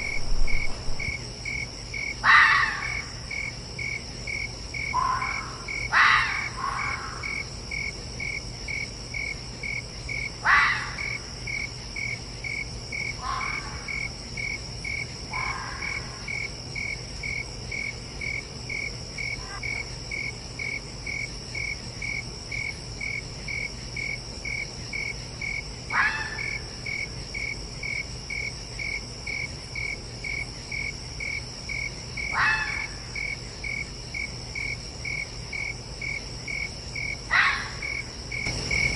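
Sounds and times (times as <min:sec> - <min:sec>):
crickets chirping: 0:00.0 - 0:38.9
high insect trill: 0:00.0 - 0:38.9
fox barking: 0:02.2 - 0:03.1, 0:04.9 - 0:07.3, 0:10.4 - 0:11.1, 0:13.2 - 0:13.9, 0:15.3 - 0:16.1, 0:25.9 - 0:26.6, 0:32.3 - 0:33.0, 0:37.3 - 0:38.0.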